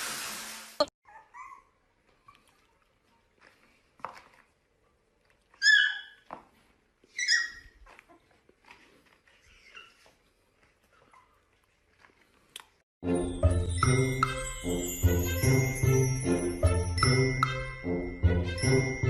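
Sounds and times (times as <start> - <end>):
puppy crying: 1.0 - 2.4, 5.6 - 6.2, 7.1 - 8.3
faint squeaks: 7.1 - 11.6.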